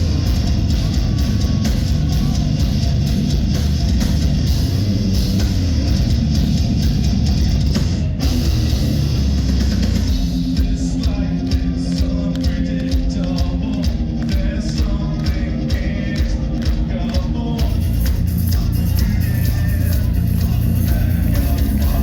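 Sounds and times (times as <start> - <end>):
drums beating: 0.0 - 22.0
heavy metal band playing live: 0.0 - 22.0
person singing: 10.5 - 22.0.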